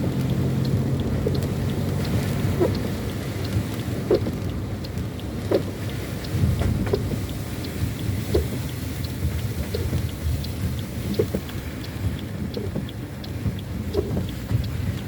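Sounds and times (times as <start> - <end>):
car driving rumble: 0.0 - 15.0
light ticks and taps: 0.0 - 15.0.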